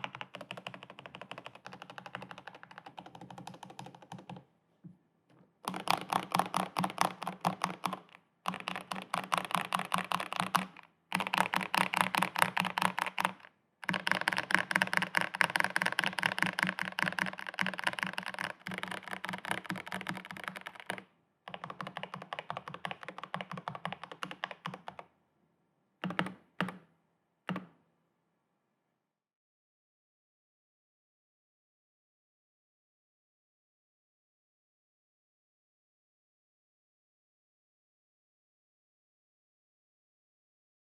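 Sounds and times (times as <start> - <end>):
mechanical keyboard typing: 0.0 - 4.4, 5.6 - 25.1, 26.0 - 26.8.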